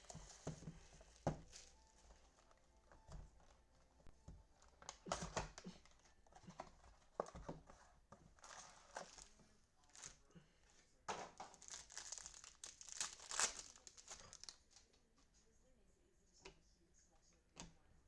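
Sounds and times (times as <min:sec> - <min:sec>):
plastic wrapper crinkling and tearing: 0:04.5 - 0:07.3, 0:08.4 - 0:10.2, 0:11.4 - 0:14.9.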